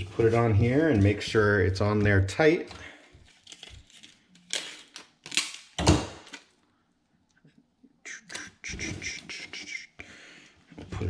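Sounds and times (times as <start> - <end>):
packaging tape rasping: 3.3 - 6.6.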